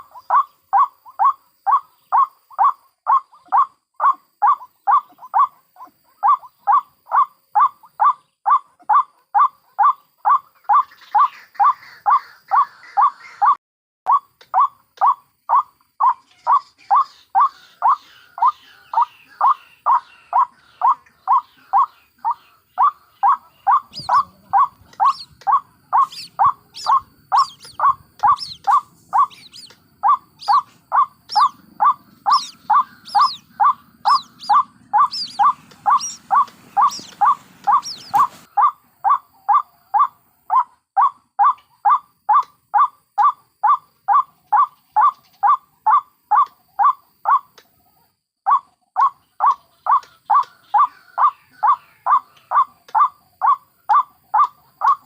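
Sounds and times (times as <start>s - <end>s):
low bird call: 0.0s - 47.5s
chicks chirping: 16.0s - 38.7s.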